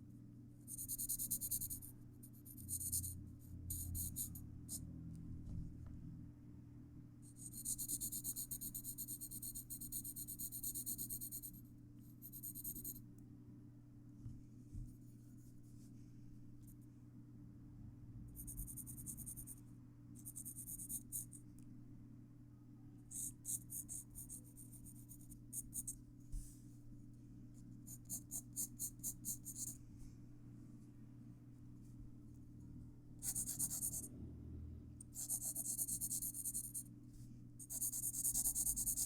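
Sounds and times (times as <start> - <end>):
faint low hum: 0.0 - 39.0
pencil scratching on paper: 0.7 - 4.8, 27.9 - 29.8, 33.2 - 34.1, 35.2 - 36.8, 37.6 - 39.0.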